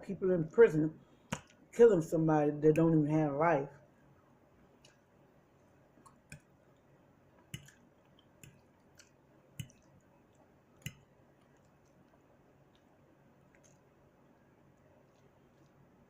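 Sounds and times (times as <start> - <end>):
wet mouth chewing smacks: 7.6 - 13.9.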